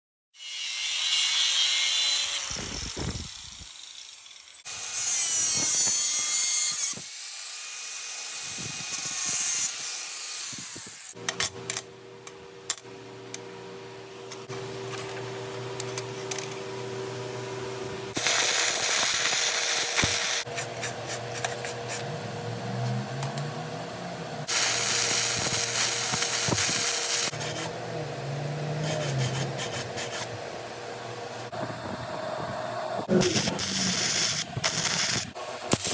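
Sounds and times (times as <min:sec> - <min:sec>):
steady motor hum: 0:21.6 - 0:35.7
power tools running: 0:21.7 - 0:35.9.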